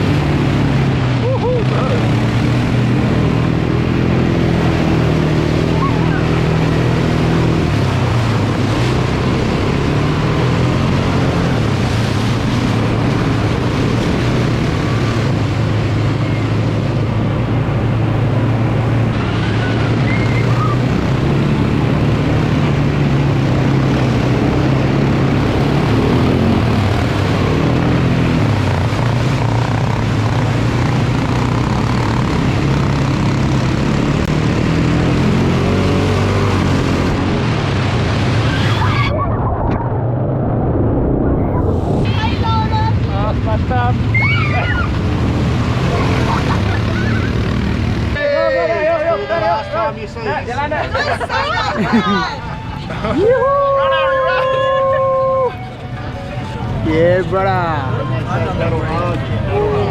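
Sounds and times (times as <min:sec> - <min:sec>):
quad bike engine revving: 0:00.0 - 0:39.0, 0:42.1 - 0:49.8.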